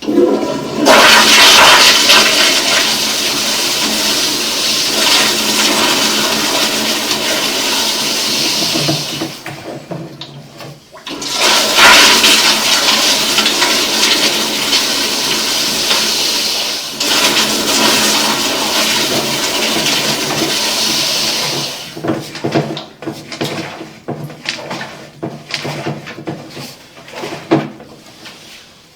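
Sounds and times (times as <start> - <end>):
toilet flushing: 0.0 - 28.9.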